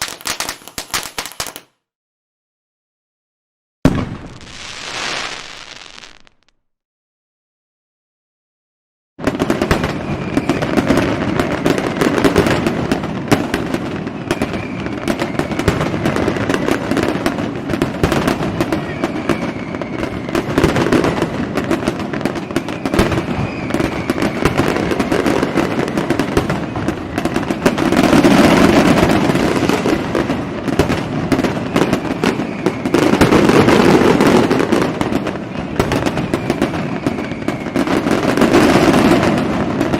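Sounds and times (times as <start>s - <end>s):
fireworks bangs and crackles: 0.0s - 1.7s, 3.8s - 6.7s, 9.2s - 39.9s
faint firework whistles: 3.9s - 6.7s, 9.6s - 12.3s, 13.8s - 17.2s, 18.0s - 35.0s, 35.8s - 39.9s.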